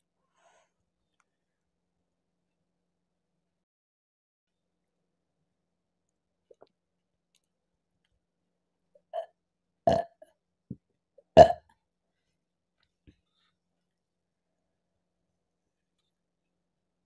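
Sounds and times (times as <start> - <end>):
woman burping: 9.9 - 10.2, 11.4 - 11.6.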